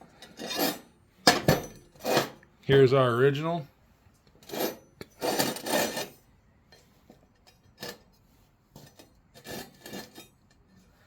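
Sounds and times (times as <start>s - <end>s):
angle iron scraping: 0.2s - 1.0s.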